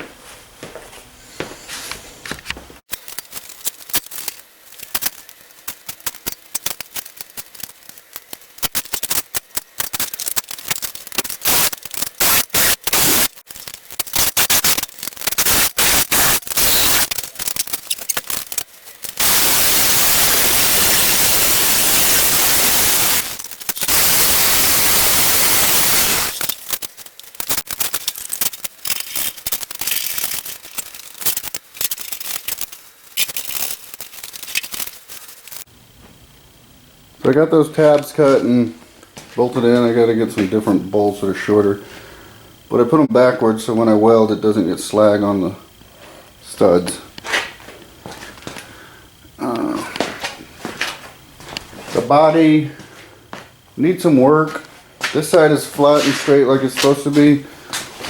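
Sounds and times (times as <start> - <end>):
cutting tool hissing: 8.4 - 35.7
sharp metal clicks and knocks: 26.4 - 35.7.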